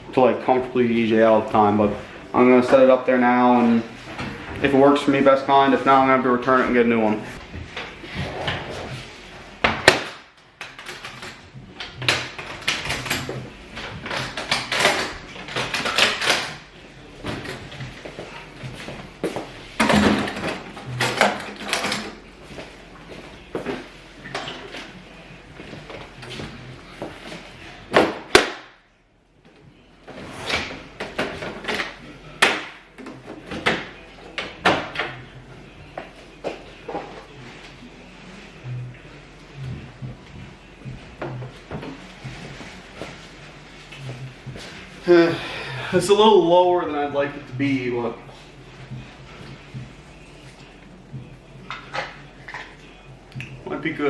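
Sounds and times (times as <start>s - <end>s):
folding table clattering and scraping: 7.4s - 10.1s, 10.7s - 22.3s.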